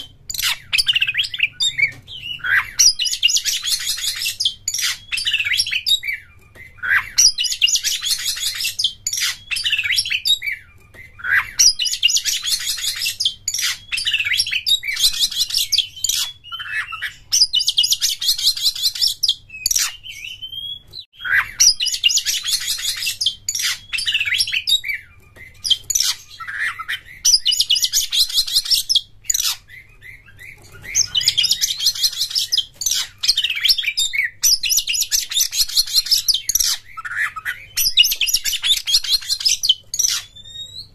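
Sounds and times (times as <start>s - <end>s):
songbird singing trills: 0.0s - 40.9s.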